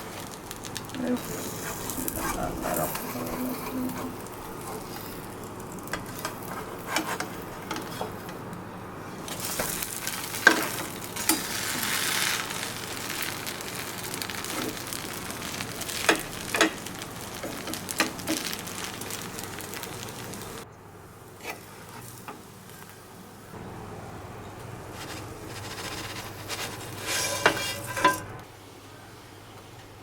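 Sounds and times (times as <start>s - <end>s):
food sizzling in a pan: 0.0s - 8.5s, 9.1s - 20.6s, 24.8s - 28.5s
utensil scraping a pan: 1.1s - 8.4s, 24.9s - 28.4s.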